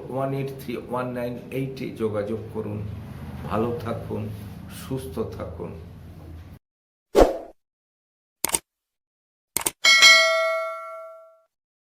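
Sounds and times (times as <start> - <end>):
bright bell-like ding: 9.8 - 11.5.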